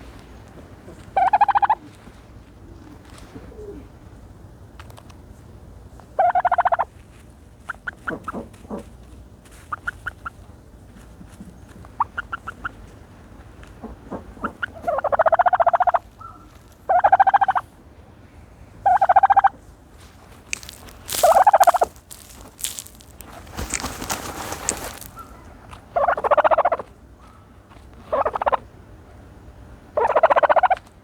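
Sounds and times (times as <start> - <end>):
turkey gobbling: 0.7 - 2.0, 6.2 - 6.9, 9.7 - 10.4, 12.0 - 12.9, 14.2 - 17.7, 18.8 - 19.6, 20.5 - 27.0, 28.1 - 28.7, 30.0 - 30.9.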